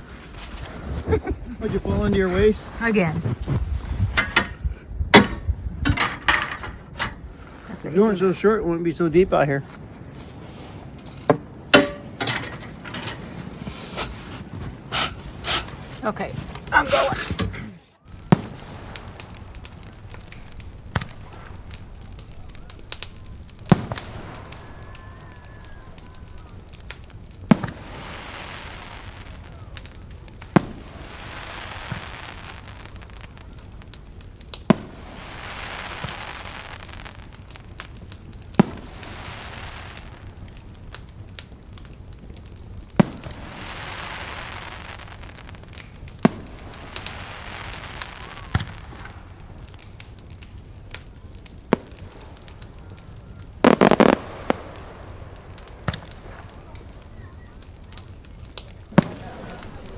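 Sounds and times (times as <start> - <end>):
sharp cracks: 14.9 - 59.9.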